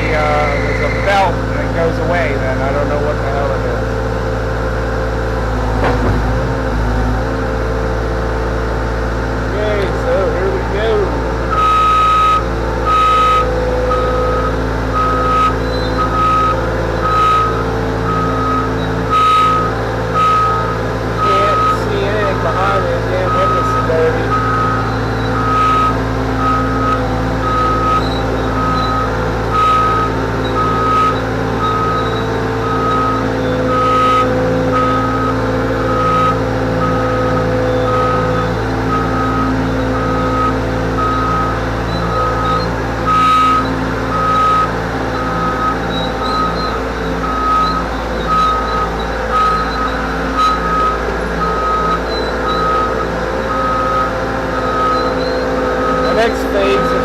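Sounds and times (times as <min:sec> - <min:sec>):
diesel engine running: 0:00.0 - 0:57.0
backup alarm beeping: 0:11.5 - 0:57.0.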